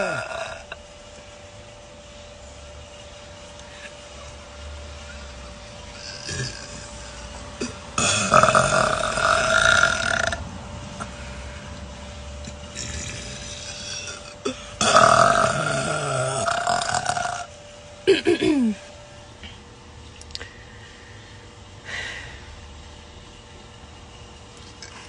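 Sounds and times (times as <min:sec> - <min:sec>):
woman burping loudly: 0:00.0 - 0:00.8, 0:06.0 - 0:07.0, 0:07.6 - 0:10.4, 0:12.7 - 0:17.5.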